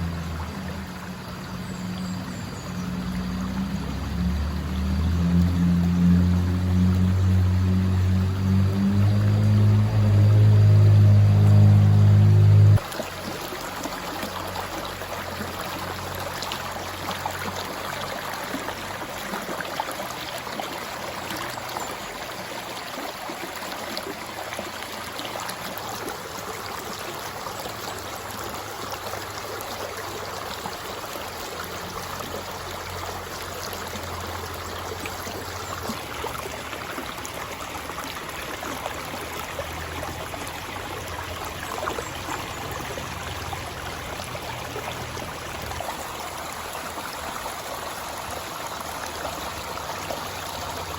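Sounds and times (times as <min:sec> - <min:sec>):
river water burbling over stones: 0:00.0 - 0:50.9
low hum: 0:03.8 - 0:12.8.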